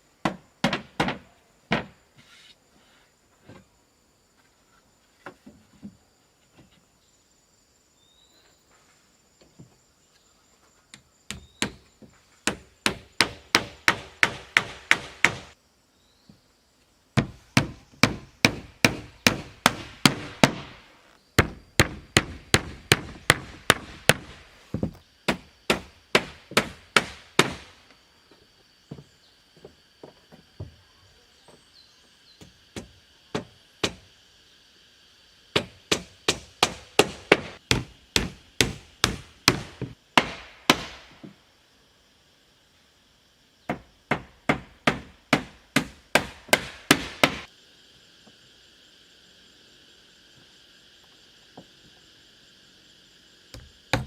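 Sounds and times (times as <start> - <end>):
hand tool chopping wood: 35.6 - 41.0, 44.1 - 47.4.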